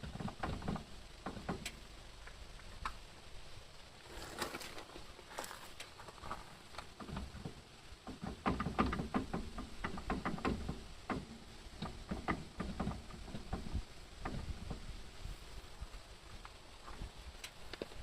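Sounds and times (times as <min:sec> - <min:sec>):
sharp clicks and knocks: 0:00.0 - 0:03.0, 0:05.7 - 0:15.0.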